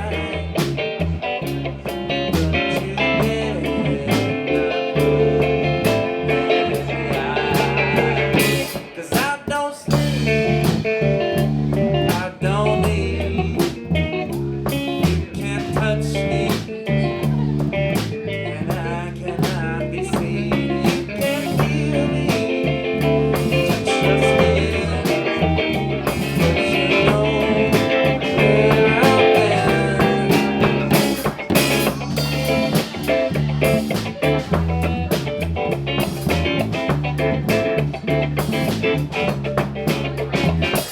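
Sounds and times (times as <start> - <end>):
live blues-rock band: 0.0 - 40.9
drum hits: 20.2 - 40.9.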